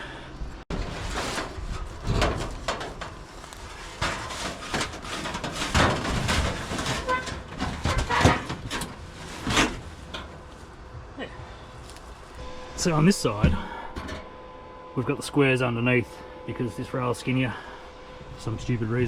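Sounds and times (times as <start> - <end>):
objects knocking and scraping: 0.7 - 11.1, 13.4 - 14.3.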